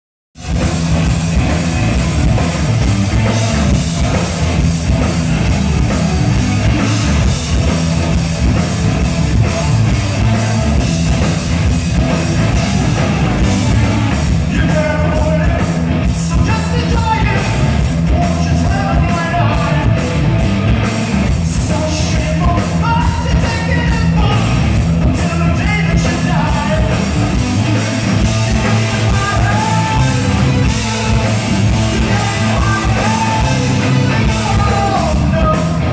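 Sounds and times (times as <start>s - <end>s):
rock band playing: 0.4s - 35.9s
person singing: 25.2s - 35.9s.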